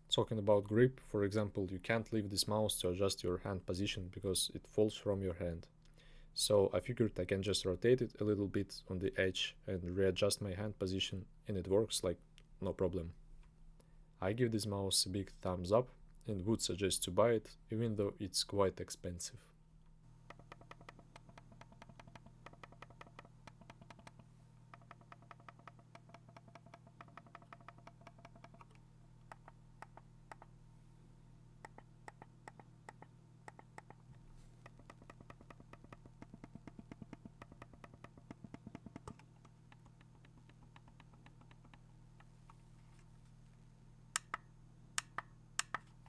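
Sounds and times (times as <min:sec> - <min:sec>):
mouse buttons clicking: 0:24.8 - 0:30.5, 0:31.6 - 0:34.0, 0:34.6 - 0:42.3, 0:44.2 - 0:45.9.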